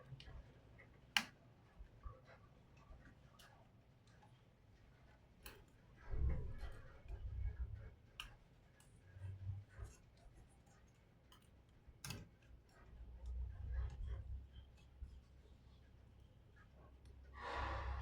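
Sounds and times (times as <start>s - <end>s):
small laptop parts clicking: 8.2s - 8.9s, 10.7s - 13.4s.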